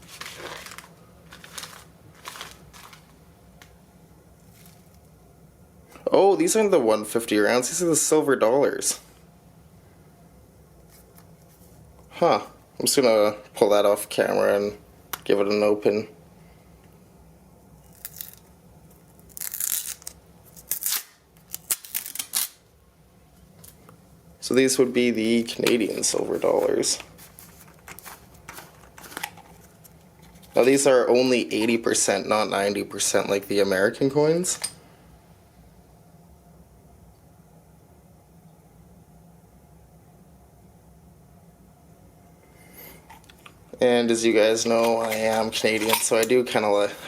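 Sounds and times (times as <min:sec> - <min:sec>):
packaging being torn and crinkled: 0:00.0 - 0:03.2, 0:17.9 - 0:18.5, 0:19.1 - 0:22.6
packaging rustling and crinkling: 0:00.0 - 0:03.2, 0:04.4 - 0:05.0, 0:19.1 - 0:22.6, 0:25.6 - 0:30.8, 0:44.6 - 0:46.6.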